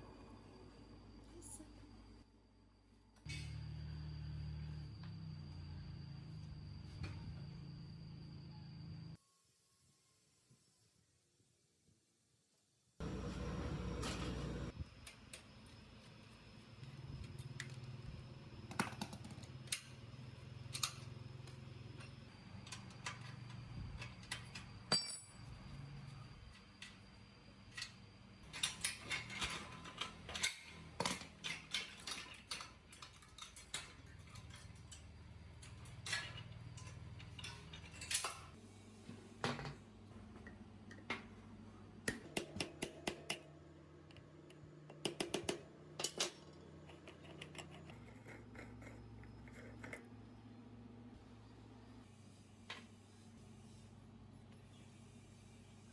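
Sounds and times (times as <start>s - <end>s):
metal tools clinking: 22.7s - 25.5s, 27.8s - 38.6s.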